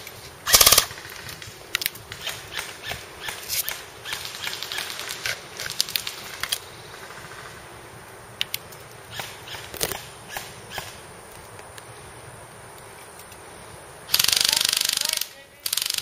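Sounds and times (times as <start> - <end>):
airsoft guns firing: 0.4 - 1.4, 14.1 - 16.0.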